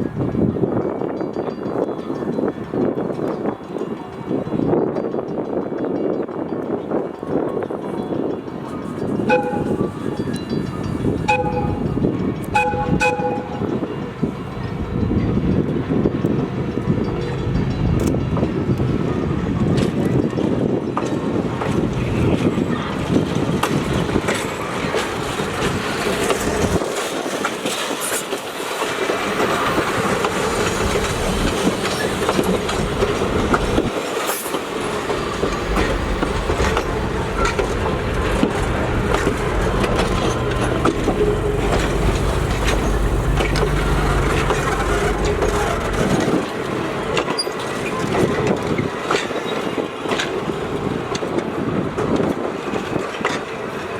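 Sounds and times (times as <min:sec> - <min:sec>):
train rumbling on track: 0:00.0 - 0:53.9
wheels clicking over rail joints: 0:08.6 - 0:53.9.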